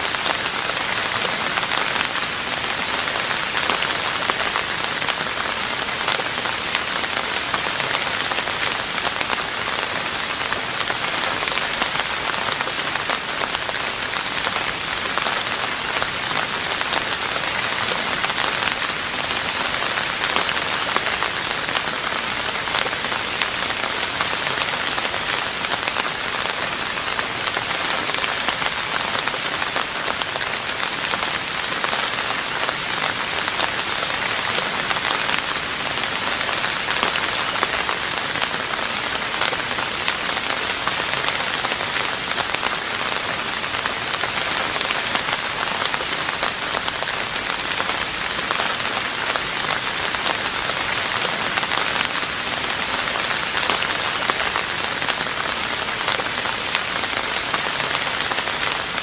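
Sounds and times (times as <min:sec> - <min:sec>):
rain on a roof: 0:00.0 - 0:59.0.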